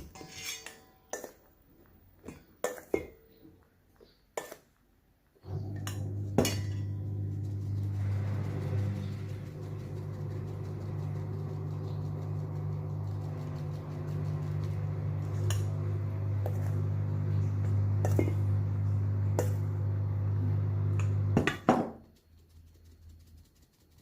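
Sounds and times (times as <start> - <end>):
kitchen bowls and utensils clinking: 0.0 - 1.6, 2.2 - 4.7, 5.4 - 19.8, 20.8 - 22.0
low electric hum: 5.4 - 23.6.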